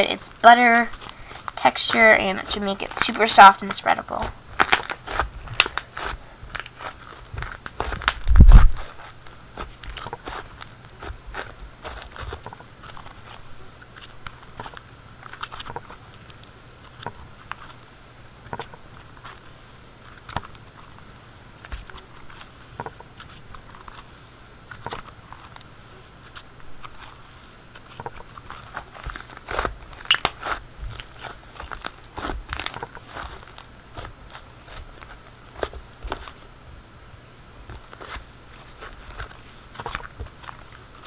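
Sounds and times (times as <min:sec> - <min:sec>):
slime crackling and popping: 0:00.9 - 0:13.4, 0:27.8 - 0:36.4.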